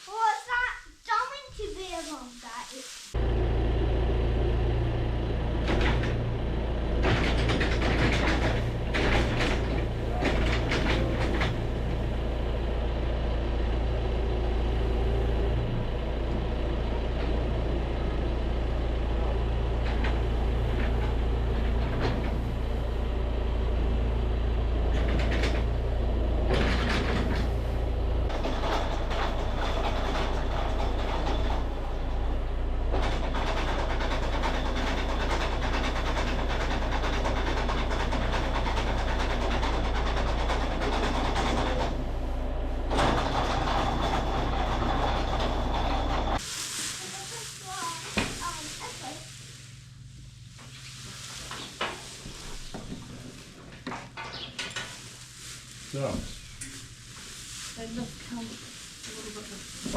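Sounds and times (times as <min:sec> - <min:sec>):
tractor engine idling: 0:03.2 - 0:59.9
metallic clanking and rattling: 0:05.4 - 0:14.0, 0:18.6 - 0:46.4.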